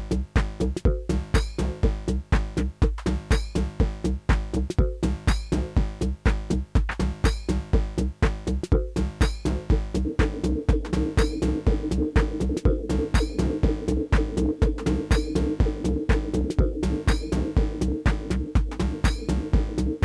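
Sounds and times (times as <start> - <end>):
techno music: 0.0 - 20.0.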